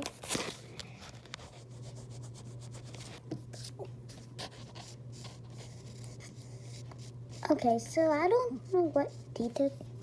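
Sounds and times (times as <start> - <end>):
steady low hum: 0.0 - 10.0
pencil scratching on paper: 1.4 - 7.7.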